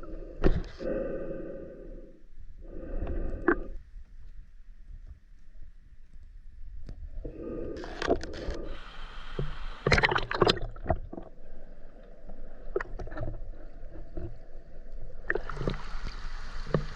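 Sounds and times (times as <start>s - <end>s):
water sloshing and splashing: 9.4s - 11.4s, 12.6s - 16.9s.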